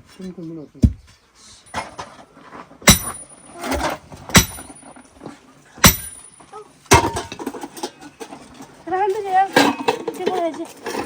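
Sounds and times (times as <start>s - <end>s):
heavy knocking strikes: 4.3s - 4.7s, 5.8s - 6.2s.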